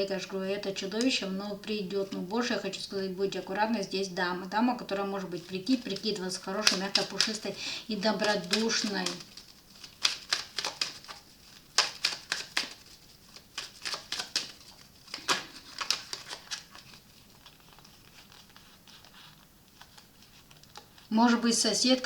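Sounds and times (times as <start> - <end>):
cards clicking on a table: 5.7 - 7.4, 8.1 - 12.9, 13.6 - 16.9.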